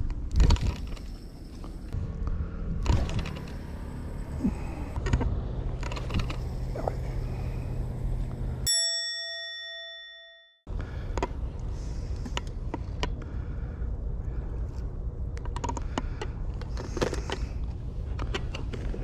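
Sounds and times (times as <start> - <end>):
bright bell-like ding: 8.7 - 10.6.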